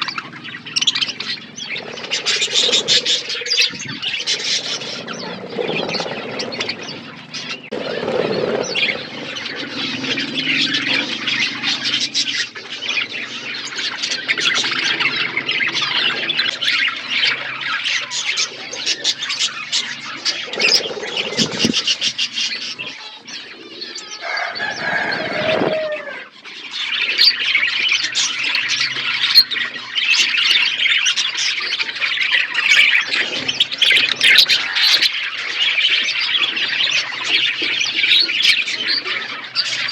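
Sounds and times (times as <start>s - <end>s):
low gliding bird call: 0.0s - 31.3s
budgerigars chattering and warbling: 0.0s - 39.9s.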